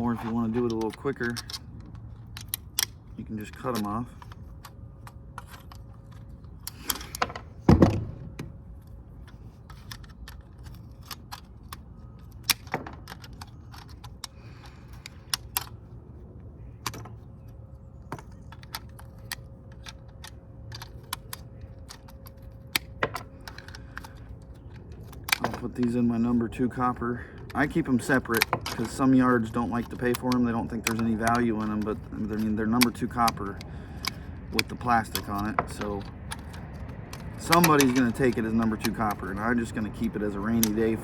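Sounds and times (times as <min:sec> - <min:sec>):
wire cutters snipping: 0:18.1 - 0:41.0.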